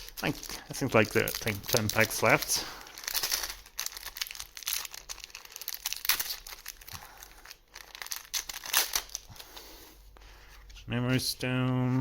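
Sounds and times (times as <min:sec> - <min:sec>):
foil wrapper crinkling and tearing: 0:00.0 - 0:09.6.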